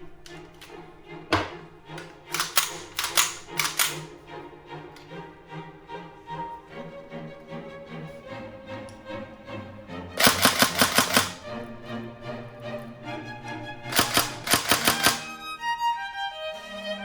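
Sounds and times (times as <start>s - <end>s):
background music: 0.0s - 17.0s
airsoft gun firing bursts: 2.3s - 4.1s, 10.2s - 11.5s, 13.9s - 15.4s.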